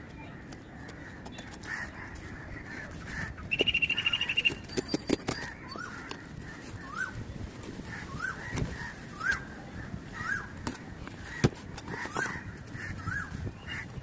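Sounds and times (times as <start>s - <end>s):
fast pulsing bird trill: 3.5s - 6.0s.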